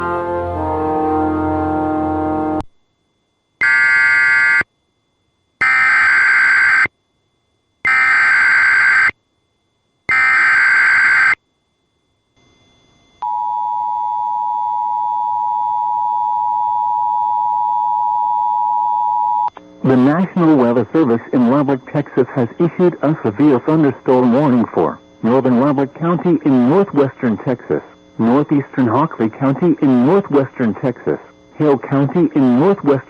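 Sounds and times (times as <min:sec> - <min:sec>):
brass music sting: 0:00.0 - 0:02.6
digital data tone bursts: 0:19.8 - 0:33.0.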